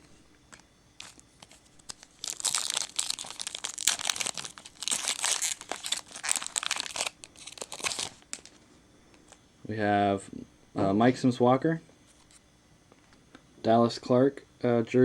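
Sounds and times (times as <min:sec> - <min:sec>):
wrapper tearing and crinkling: 0:01.0 - 0:08.6.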